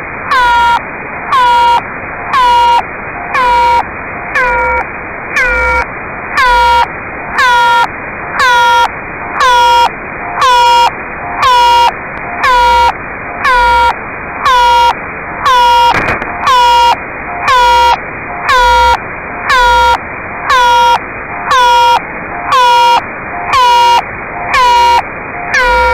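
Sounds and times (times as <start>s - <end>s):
pulsing buzzy radio tone: 0.0s - 25.9s
radio receiver hiss: 15.8s - 16.5s.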